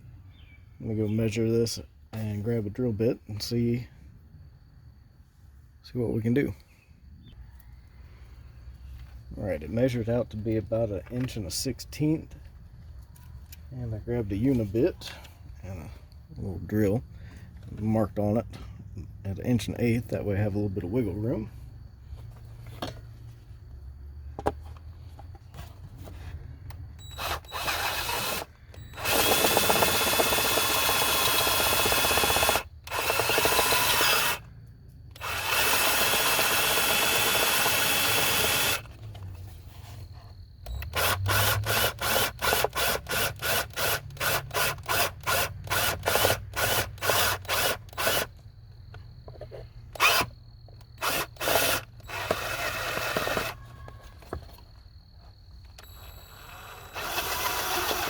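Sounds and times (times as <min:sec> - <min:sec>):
power drill boring metal: 0:27.0 - 0:34.5, 0:35.1 - 0:38.9, 0:40.6 - 0:48.3, 0:49.9 - 0:50.3, 0:51.0 - 0:53.6, 0:55.8 - 0:58.0.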